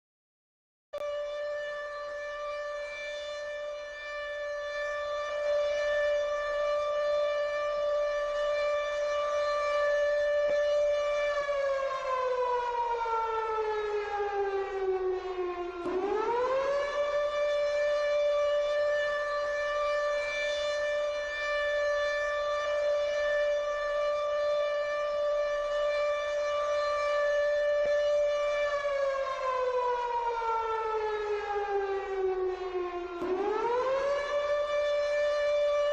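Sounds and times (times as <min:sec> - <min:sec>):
air-raid siren: 0:01.0 - 0:35.9.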